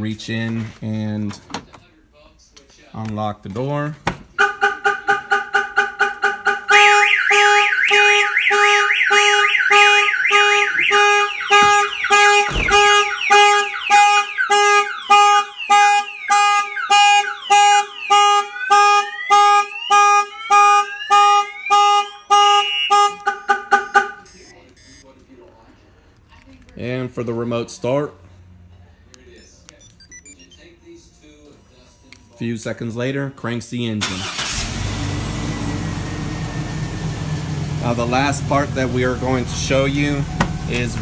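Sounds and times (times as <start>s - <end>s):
car alarm siren: 4.4s - 25.0s, 34.1s - 41.0s
thump: 12.5s - 12.8s.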